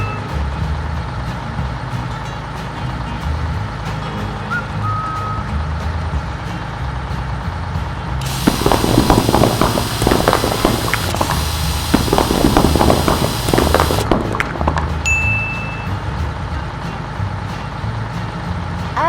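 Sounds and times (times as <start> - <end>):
loud hiss: 8.2 - 14.1
truck engine rumbling: 8.2 - 14.3.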